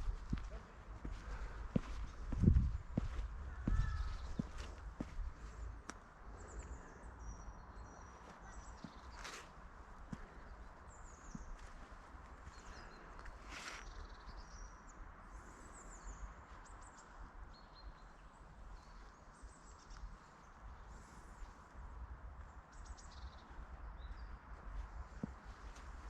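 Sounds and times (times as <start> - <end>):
low outdoor rumble: 0.0 - 6.9
small birds chirping: 0.0 - 26.0.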